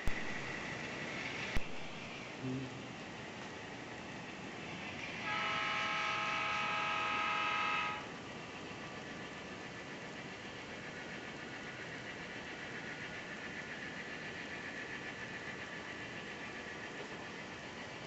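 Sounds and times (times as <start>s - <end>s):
diesel locomotive rumble: 0.0s - 18.0s
locomotive air horn blast: 5.2s - 8.1s.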